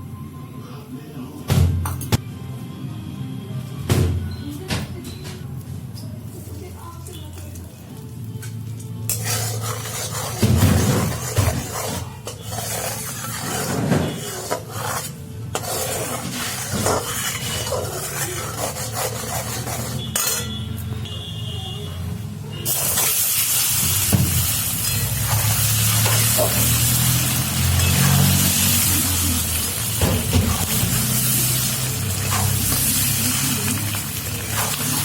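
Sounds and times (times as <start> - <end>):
pan and utensil clatter: 9.1 - 20.6, 22.7 - 35.0
food sizzling in a pan: 22.6 - 35.0.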